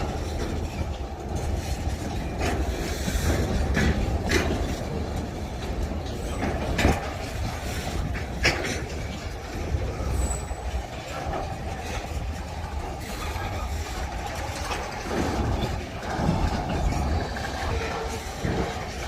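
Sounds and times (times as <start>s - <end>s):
train wheels rumbling on rail: 0.0s - 19.0s
wheels clacking over rail joints: 0.0s - 19.0s.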